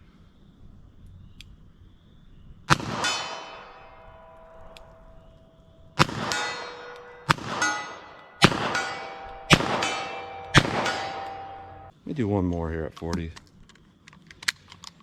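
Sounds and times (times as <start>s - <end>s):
revolver shots: 2.7s - 5.3s, 6.0s - 11.9s
steel target ringing clang: 2.7s - 11.9s.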